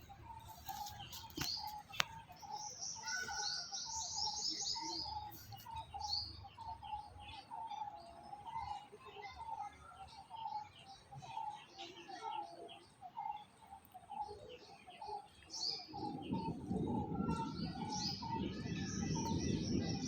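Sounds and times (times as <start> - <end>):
birds high chirps: 0.0 - 20.0.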